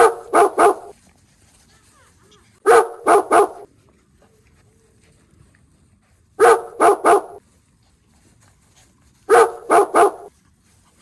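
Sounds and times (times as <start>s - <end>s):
dog barking: 0.0s - 0.9s, 2.6s - 3.7s, 6.4s - 7.4s, 9.3s - 10.3s.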